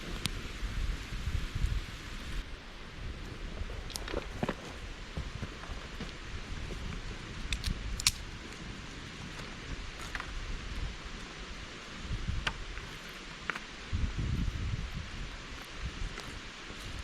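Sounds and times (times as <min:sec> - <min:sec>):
mountain stream running: 0:00.0 - 0:07.6, 0:08.2 - 0:17.0
sharp clicks: 0:07.5 - 0:08.2.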